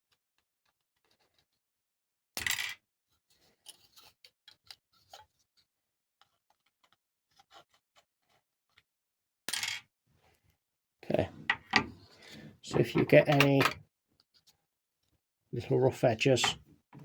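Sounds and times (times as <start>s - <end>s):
plastic parts clicking and tapping: 11.1s - 13.8s.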